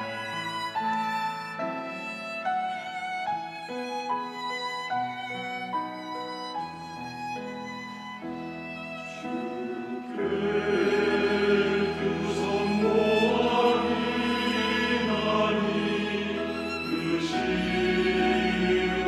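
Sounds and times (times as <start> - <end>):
church choir singing a hymn: 7.7 - 19.0.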